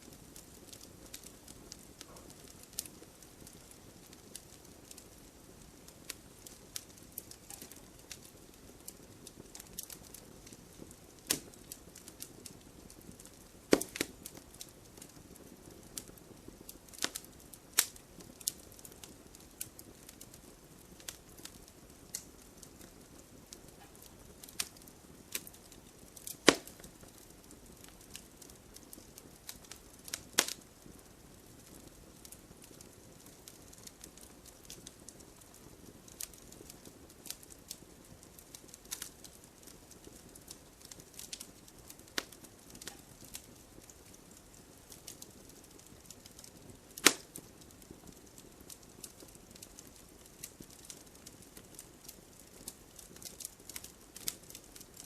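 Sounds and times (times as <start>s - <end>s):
firewood burning: 0.0s - 55.0s
small crackles: 0.0s - 55.0s
sharp pops: 13.7s - 14.1s, 26.4s - 26.9s, 47.0s - 47.3s.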